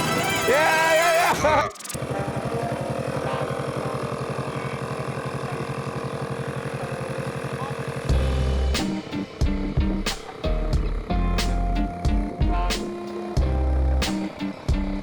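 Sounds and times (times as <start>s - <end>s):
atv engine idling: 2.0s - 8.8s.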